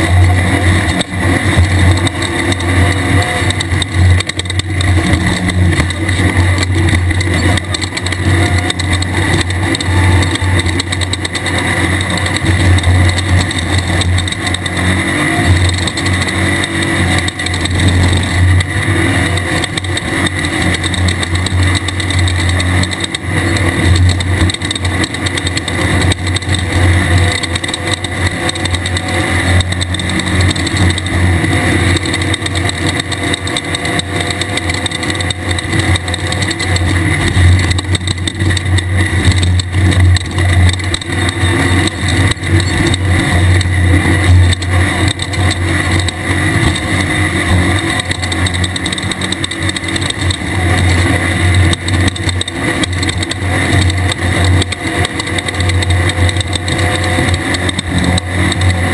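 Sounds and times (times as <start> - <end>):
constant rushing noise: 0.0 - 58.9
race car engine droning: 0.0 - 58.9.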